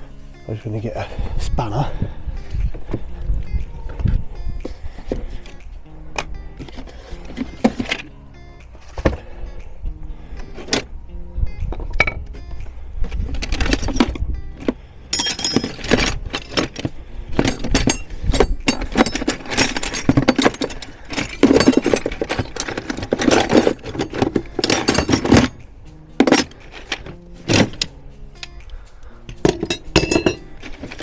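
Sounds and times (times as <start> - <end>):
metal spanners clinking: 13.3 - 25.6, 26.2 - 27.9, 29.4 - 31.0.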